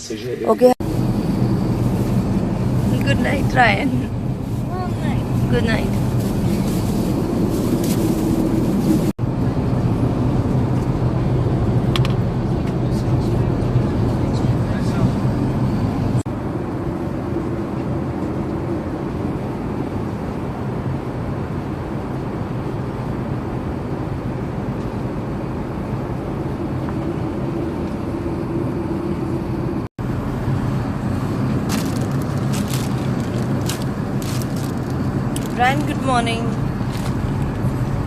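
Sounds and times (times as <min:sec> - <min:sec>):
airplane cabin rushing noise: 0:00.0 - 0:38.0.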